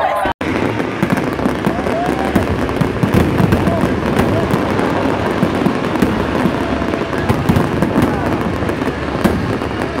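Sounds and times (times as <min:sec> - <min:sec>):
fireworks crackling and popping: 0:00.4 - 0:10.0.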